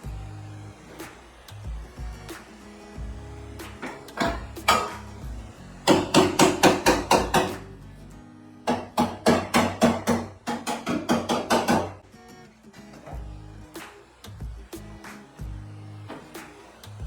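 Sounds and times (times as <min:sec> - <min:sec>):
background music: 0:00.0 - 0:17.0
hammer striking sheet metal: 0:03.6 - 0:07.7, 0:08.6 - 0:12.0.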